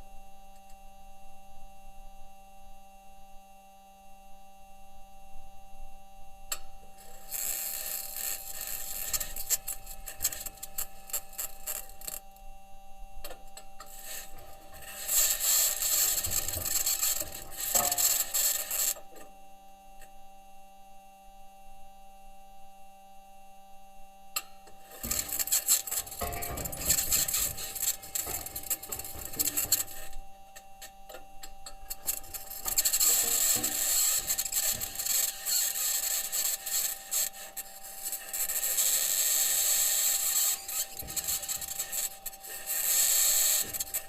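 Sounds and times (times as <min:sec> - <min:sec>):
electrical hum tones: 0:00.0 - 0:44.0
metal wheels scraping over rock: 0:13.8 - 0:19.0, 0:24.9 - 0:30.2, 0:31.8 - 0:44.0.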